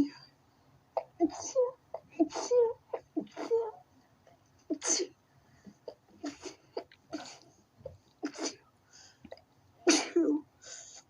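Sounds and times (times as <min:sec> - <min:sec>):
person sneezing: 0:09.9 - 0:10.4.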